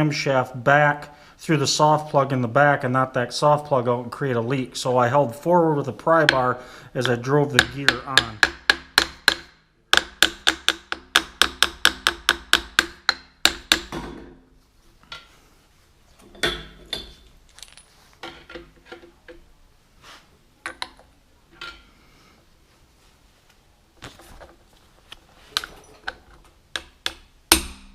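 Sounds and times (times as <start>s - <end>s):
tools clinking and knocking: 16.2s - 19.5s, 20.6s - 21.9s, 24.0s - 27.3s
hammer striking metal: 26.8s - 27.9s.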